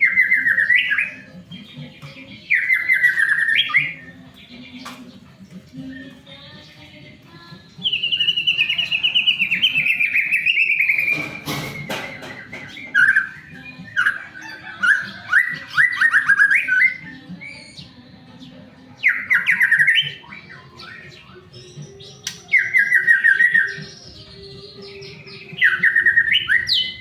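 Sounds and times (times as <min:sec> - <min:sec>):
bird whistled notes: 0:00.0 - 0:01.3, 0:07.8 - 0:17.1, 0:22.2 - 0:27.0
bird trilling: 0:00.0 - 0:07.0, 0:07.6 - 0:27.0.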